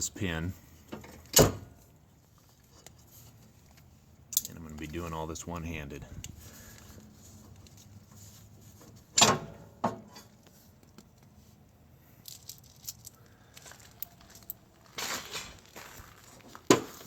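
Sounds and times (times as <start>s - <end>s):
metal pin clanking: 9.1s - 10.4s.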